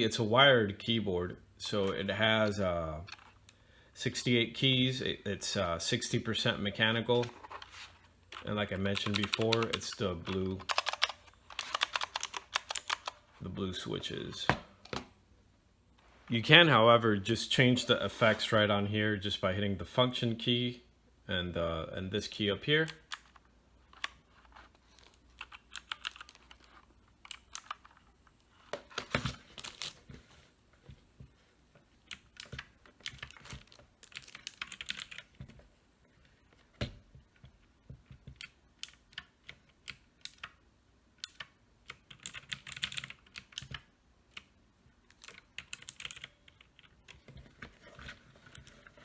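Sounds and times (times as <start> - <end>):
mechanical keyboard keys clicking: 10.6 - 13.2, 25.4 - 27.9, 32.1 - 35.3, 41.2 - 44.5, 45.1 - 46.9.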